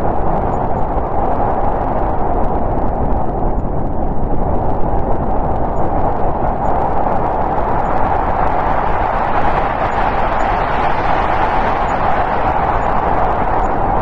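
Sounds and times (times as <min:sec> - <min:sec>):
howling snowstorm wind: 0:00.0 - 0:14.0.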